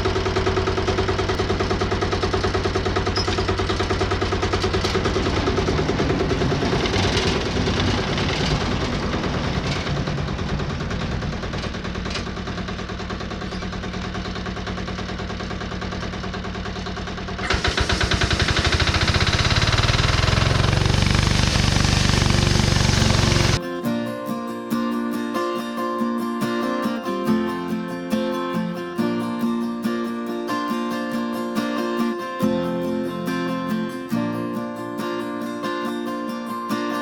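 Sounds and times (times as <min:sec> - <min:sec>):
bandsaw mill engine running: 0:00.0 - 0:23.6.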